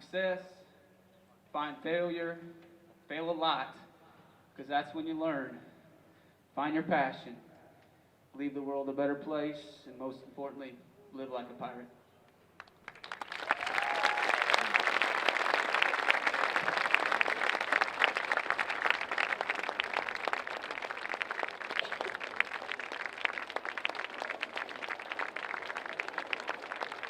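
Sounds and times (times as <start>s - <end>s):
audience applause: 12.6s - 27.0s.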